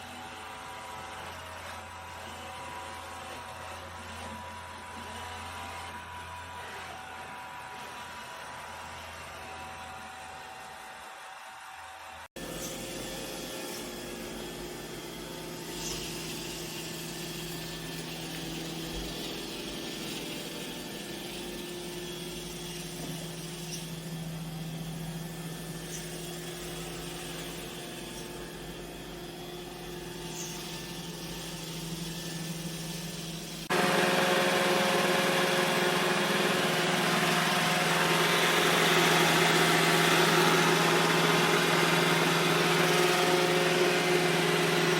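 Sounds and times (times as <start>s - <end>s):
robot vacuum motor hum: 12.4s - 44.9s.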